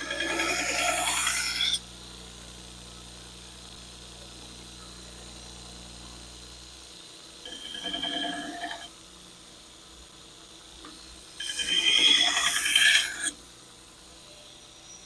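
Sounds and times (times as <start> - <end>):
knife grinding on powered sharpener: 0.0 - 1.8, 7.4 - 8.9, 11.4 - 13.4
sharpener motor humming: 0.0 - 1.8, 7.4 - 8.9, 11.4 - 13.4.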